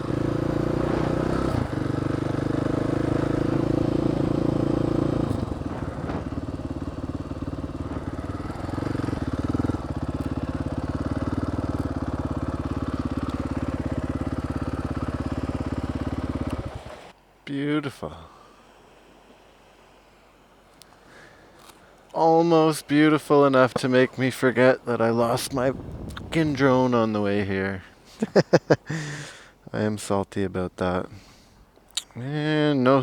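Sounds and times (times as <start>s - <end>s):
dirt bike engine running: 0.0s - 17.1s, 25.4s - 26.8s.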